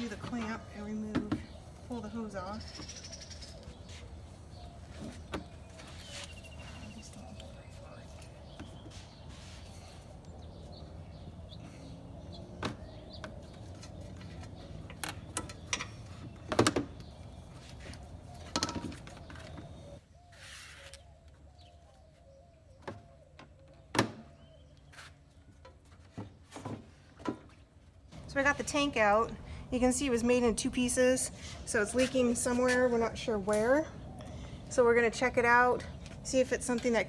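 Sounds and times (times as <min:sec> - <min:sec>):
bird chirping: 0:00.0 - 0:25.1.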